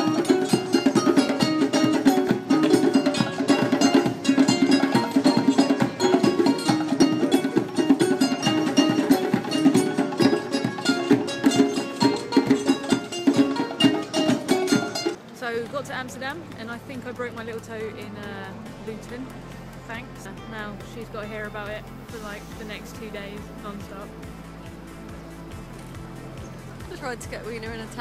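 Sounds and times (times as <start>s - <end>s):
strummed ukulele music: 0.0s - 15.2s.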